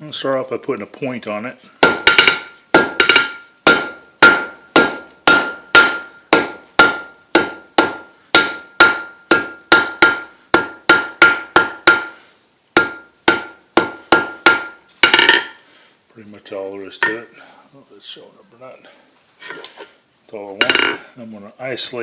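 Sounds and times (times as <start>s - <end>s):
hammer striking steel on anvil: 1.8s - 15.7s, 20.6s - 21.0s.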